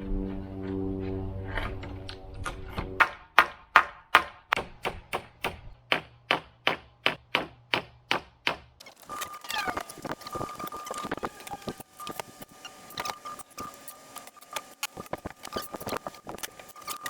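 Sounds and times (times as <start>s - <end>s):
hammer striking nail: 3.0s - 8.8s.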